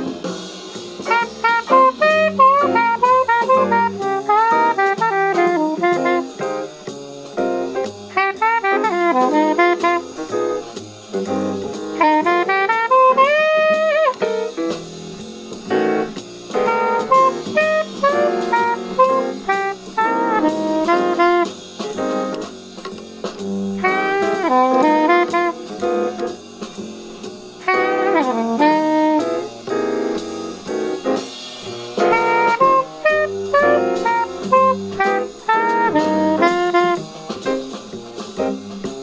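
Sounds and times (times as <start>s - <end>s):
jazz band playing swing: 0.0s - 39.0s
bass line: 1.0s - 6.6s, 7.4s - 22.5s, 23.2s - 39.0s
saxophone solo: 1.0s - 6.7s, 8.1s - 10.7s, 12.0s - 14.6s, 16.5s - 21.7s, 23.7s - 26.4s, 27.6s - 30.6s, 32.0s - 37.6s.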